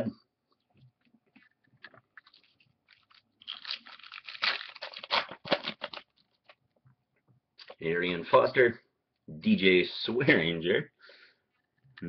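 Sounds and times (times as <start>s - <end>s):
wrapper crinkling: 1.4s - 6.6s.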